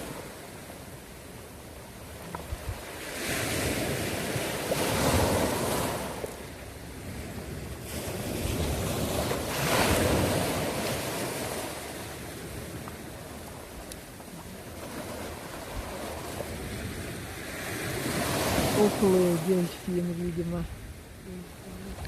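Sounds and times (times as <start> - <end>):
sea waves washing: 0.0 - 22.0
wind on microphone: 6.8 - 22.0.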